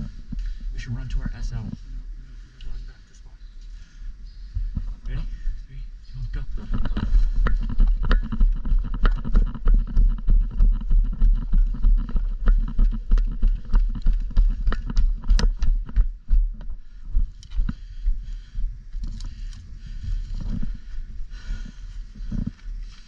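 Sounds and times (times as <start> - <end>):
running footsteps thudding: 6.6 - 23.0
carried gear clicking and rattling: 18.9 - 20.8, 21.6 - 23.0.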